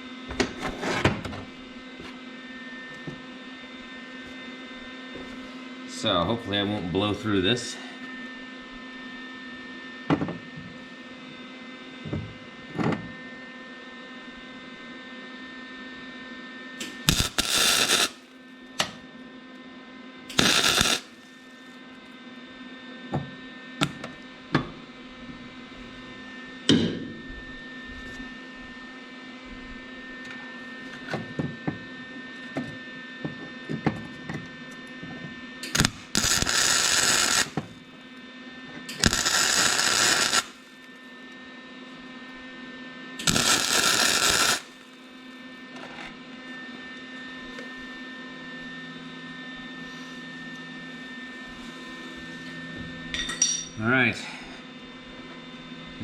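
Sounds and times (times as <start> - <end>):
electric welder welding bursts: 16.8 - 18.3, 20.3 - 21.5, 35.6 - 37.8, 38.9 - 40.9, 43.2 - 45.0
steady electrical hum: 16.8 - 18.4, 20.2 - 21.8, 35.6 - 38.2, 38.9 - 41.3, 43.2 - 45.4.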